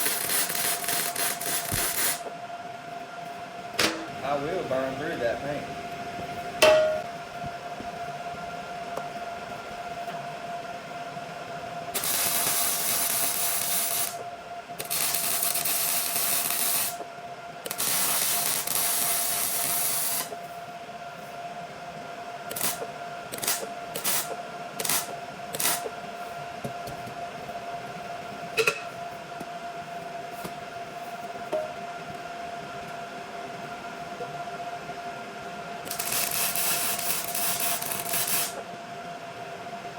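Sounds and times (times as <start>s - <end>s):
arc welding: 0.0s - 2.3s, 11.9s - 20.4s, 22.4s - 26.0s, 35.8s - 38.6s.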